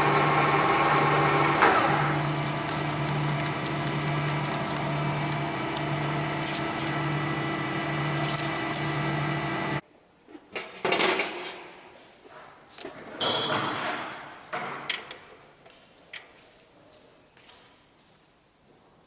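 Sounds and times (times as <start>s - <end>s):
workshop machine humming: 0.0s - 9.8s
metallic knocks and clinks: 13.2s - 15.3s.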